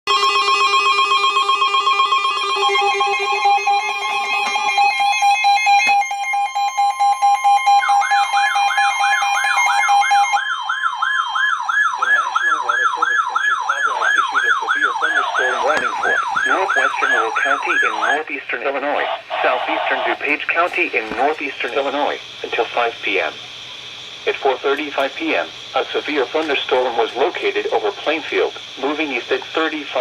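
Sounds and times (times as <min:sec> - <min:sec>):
steady alert tones: 0:00.1 - 0:10.4, 0:11.8 - 0:18.4
electronic yelp alarm: 0:00.1 - 0:30.0
buzzy warbling tones: 0:12.0 - 0:20.3.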